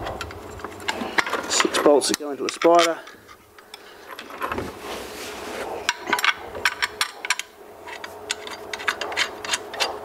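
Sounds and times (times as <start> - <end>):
tool scraping metal plate: 7.3 - 10.0.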